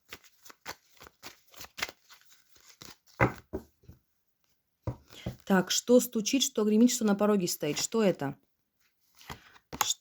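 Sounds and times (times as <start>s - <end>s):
cards being shuffled by hand: 0.0s - 3.8s.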